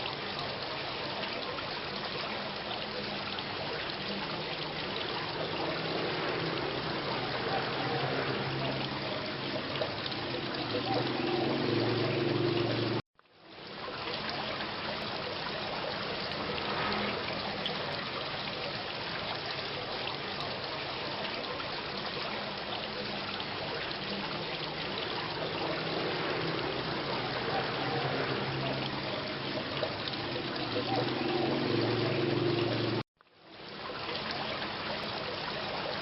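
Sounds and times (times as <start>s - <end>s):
steady rain falling: 0.0s - 36.0s.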